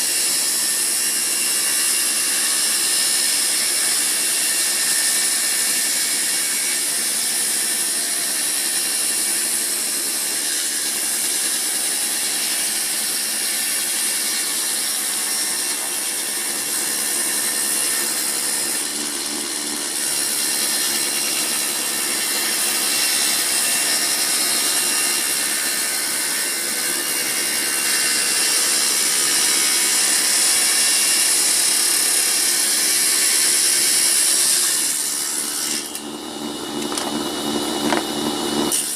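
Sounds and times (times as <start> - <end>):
table saw whining: 0.0 - 38.9.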